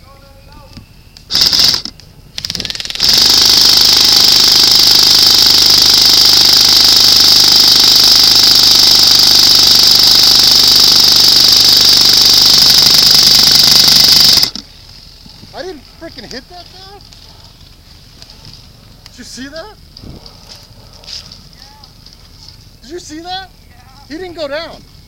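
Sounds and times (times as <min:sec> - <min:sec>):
electric gun firing bursts: 0:01.3 - 0:14.6.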